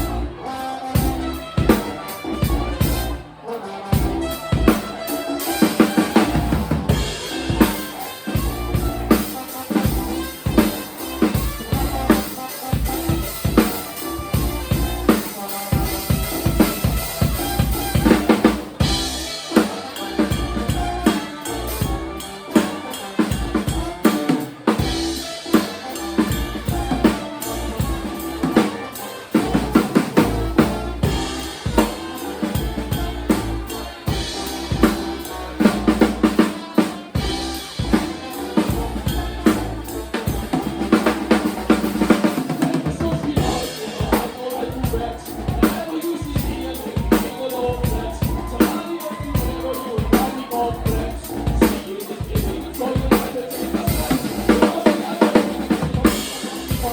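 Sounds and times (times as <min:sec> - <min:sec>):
bass drum and snare groove: 0:00.0 - 0:56.9
live band playing: 0:00.0 - 0:56.9.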